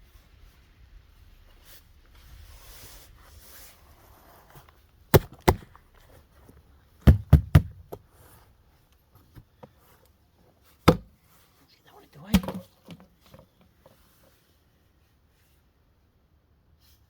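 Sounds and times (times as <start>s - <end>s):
soil rustling: 0.0s - 16.0s
sharp knocks of potatoes: 5.1s - 5.8s, 7.0s - 8.0s, 10.9s - 11.2s, 12.3s - 12.7s.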